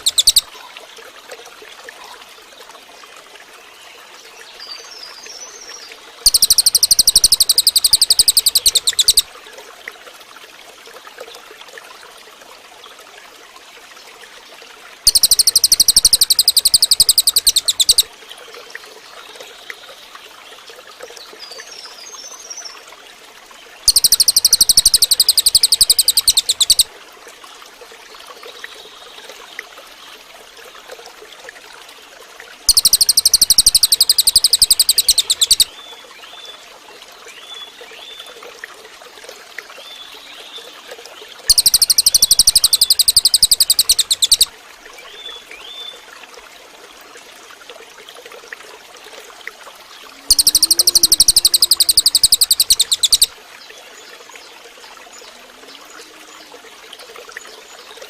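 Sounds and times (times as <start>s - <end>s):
bird rattling calls: 0.0s - 0.5s, 6.3s - 9.3s, 15.1s - 18.1s, 23.9s - 26.9s, 32.7s - 35.7s, 41.5s - 44.5s, 50.3s - 53.3s
faint bird chirps: 0.0s - 0.5s, 4.6s - 9.3s, 15.1s - 18.1s, 23.9s - 26.9s, 32.7s - 35.9s, 41.5s - 44.5s, 50.1s - 53.3s.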